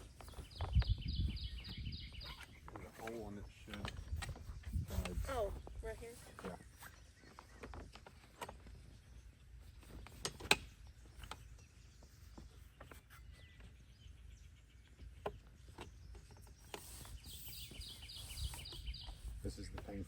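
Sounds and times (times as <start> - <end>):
bird chirping: 0.0 - 20.0
tent frame clicks and knocks: 2.2 - 5.2, 9.8 - 11.6.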